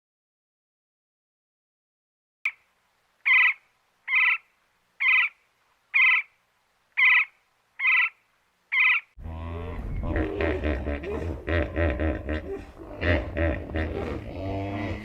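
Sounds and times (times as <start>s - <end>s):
short animal calls: 7.0s - 9.1s.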